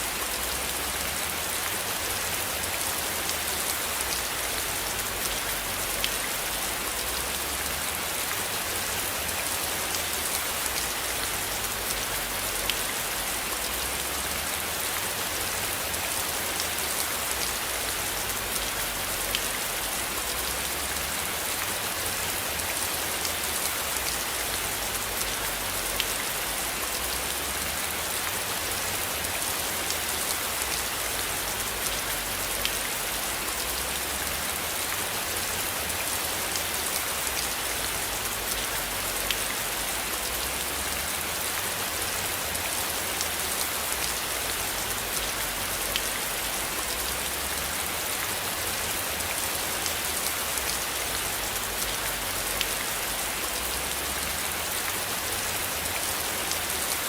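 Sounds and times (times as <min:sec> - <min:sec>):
faint ticks of raindrops: 0:00.0 - 0:57.0
steady rain hissing: 0:00.0 - 0:57.0.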